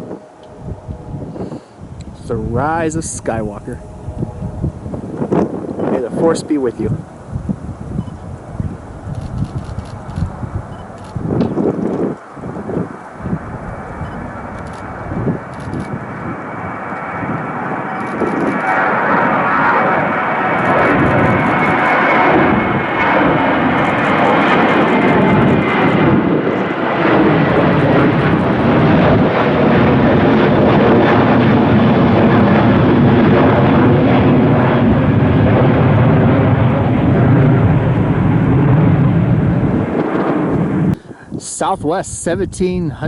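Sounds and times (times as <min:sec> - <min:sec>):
high jet whine: 0:00.0 - 0:43.0
jet engines running: 0:00.0 - 0:43.0.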